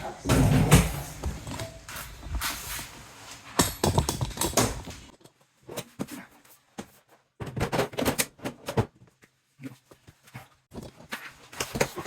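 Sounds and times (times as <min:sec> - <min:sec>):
cabinet parts knocking and clattering: 0:00.0 - 0:01.9, 0:03.5 - 0:06.1, 0:06.8 - 0:09.1.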